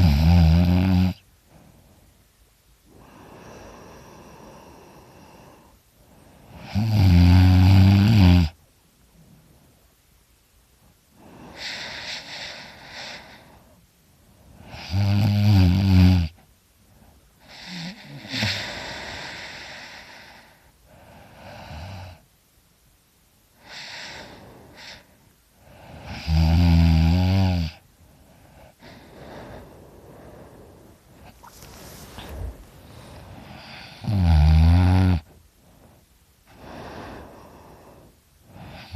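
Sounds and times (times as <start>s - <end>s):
person snoring loudly: 0.0s - 1.2s, 6.6s - 8.6s, 14.6s - 16.4s, 26.0s - 27.8s, 32.2s - 35.3s
breathy breaths: 1.4s - 6.7s, 11.1s - 14.8s, 16.8s - 21.7s, 23.6s - 26.2s, 27.8s - 34.2s, 35.2s - 38.9s.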